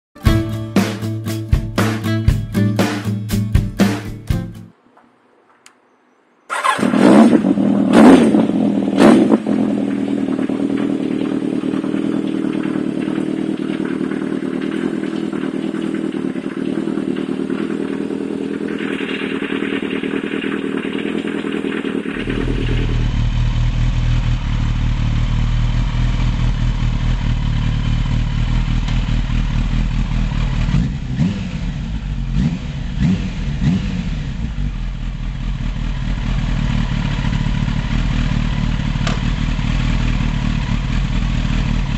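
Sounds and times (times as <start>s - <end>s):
motorcycle engine revving and idling: 6.5s - 41.9s.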